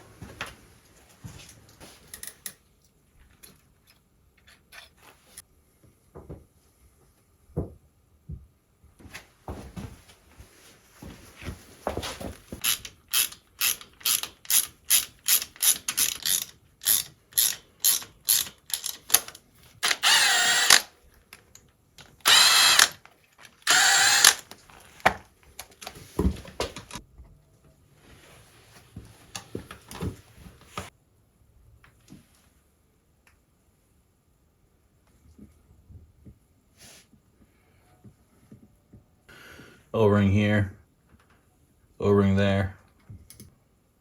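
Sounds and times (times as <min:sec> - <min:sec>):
ratchet wrench clicking: 0:12.6 - 0:20.9, 0:22.2 - 0:23.0, 0:23.7 - 0:24.4
power tool bursts: 0:19.8 - 0:20.9, 0:22.2 - 0:23.0, 0:23.6 - 0:24.5.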